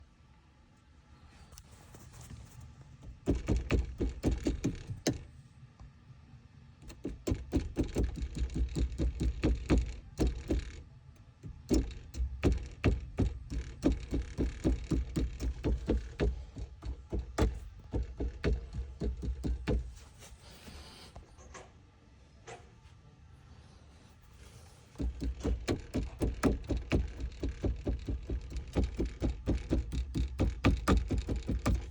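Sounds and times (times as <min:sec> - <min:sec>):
rapid knocking rattle: 0:03.0 - 0:05.3, 0:06.8 - 0:20.0, 0:24.5 - 0:31.9.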